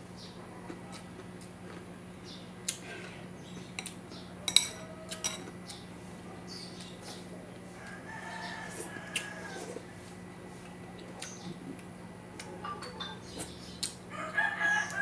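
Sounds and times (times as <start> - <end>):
spoon clinking on dishware: 4.5 - 5.5
rooster crowing: 4.7 - 5.3, 7.8 - 9.9, 14.1 - 15.0.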